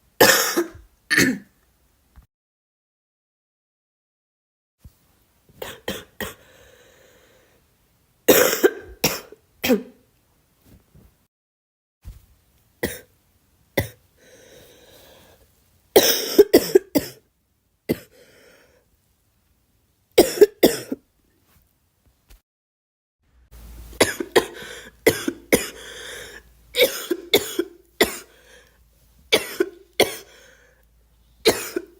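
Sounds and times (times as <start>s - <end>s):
girl coughing: 0.2s - 1.5s, 8.3s - 10.0s, 16.0s - 17.2s, 20.2s - 21.0s, 24.0s - 28.4s, 29.4s - 30.4s, 31.5s - 31.9s
quiet breaths: 6.3s - 7.8s, 14.1s - 15.7s, 18.1s - 19.0s, 24.5s - 26.8s, 27.8s - 31.5s.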